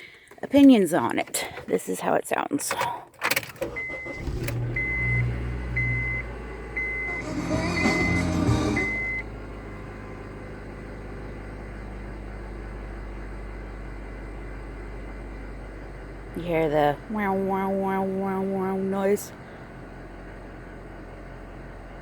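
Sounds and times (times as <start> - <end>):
car engine starting and idling: 0.0 - 22.0
dashboard chime beeping: 6.8 - 9.3.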